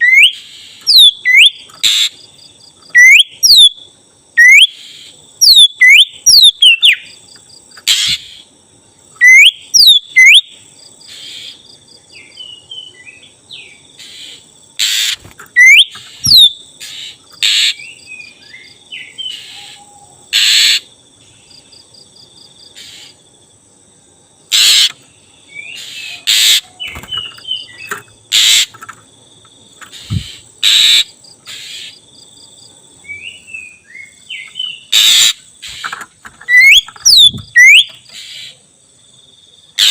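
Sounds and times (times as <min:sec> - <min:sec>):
bird singing whistles and chatter: 0:09.2 - 0:10.4, 0:15.6 - 0:16.6, 0:36.5 - 0:38.0.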